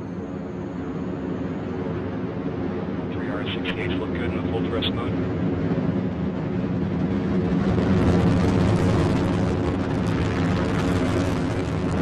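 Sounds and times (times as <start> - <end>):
rocket engines rumbling with crackle: 0.0 - 12.0.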